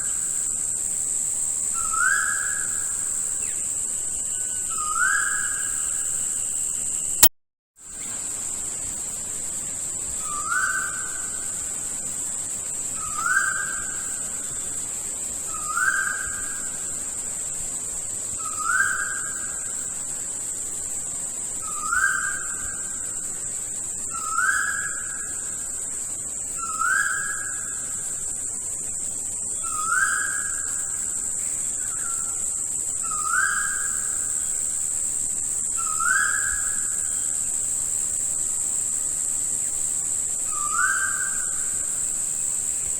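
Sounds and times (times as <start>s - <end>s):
high-pitched insect drone: 0.0s - 42.9s.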